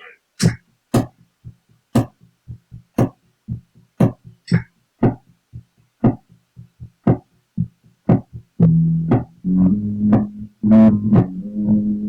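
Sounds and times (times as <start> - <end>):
low guitar thumps: 8.1 - 12.0.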